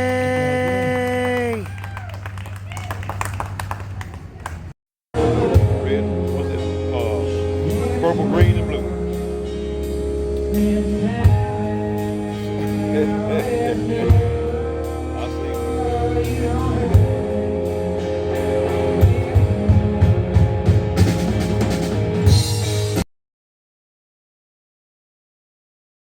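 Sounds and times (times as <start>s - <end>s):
song with guitar and drums: 5.2s - 23.0s.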